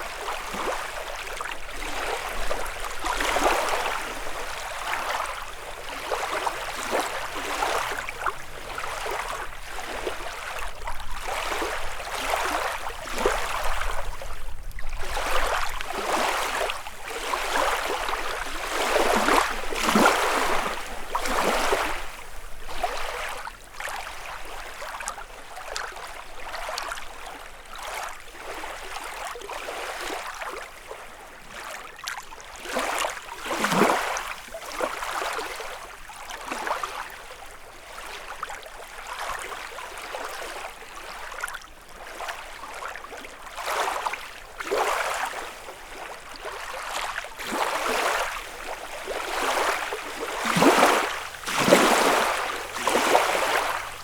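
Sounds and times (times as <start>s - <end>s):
waves lapping against shore: 0.0s - 54.0s.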